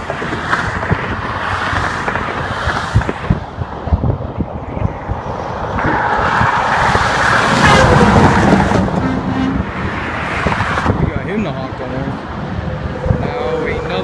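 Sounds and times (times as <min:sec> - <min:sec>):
road traffic passing: 0:00.0 - 0:14.0
wind buffeting microphone: 0:00.0 - 0:14.0
vehicle passing close by: 0:05.5 - 0:11.1.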